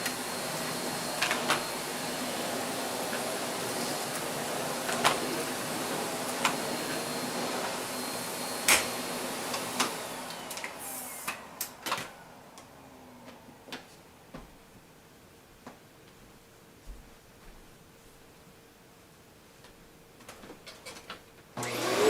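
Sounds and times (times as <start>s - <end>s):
vacuum cleaner running: 0.0s - 14.2s, 21.6s - 22.0s.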